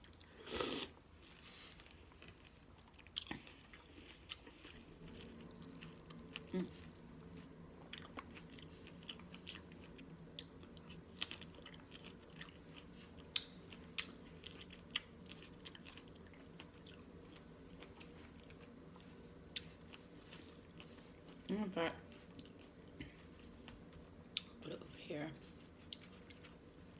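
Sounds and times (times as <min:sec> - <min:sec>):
faint steady hum: 0:00.0 - 0:26.9.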